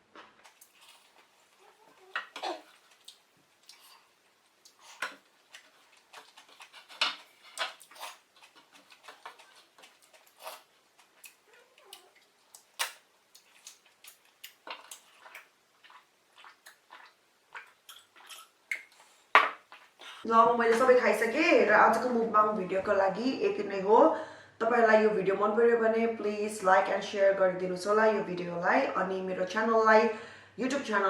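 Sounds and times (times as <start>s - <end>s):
chewing and wet mouth clicks: 2.7s - 19.0s.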